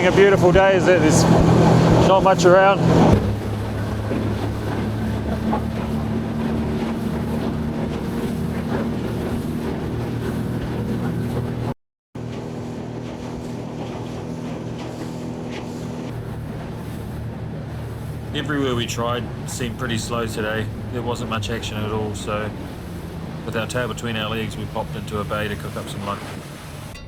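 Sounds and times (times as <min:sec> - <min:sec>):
outboard motor running: 0:00.0 - 0:27.0
water noise: 0:00.0 - 0:27.0
wind: 0:00.0 - 0:27.0.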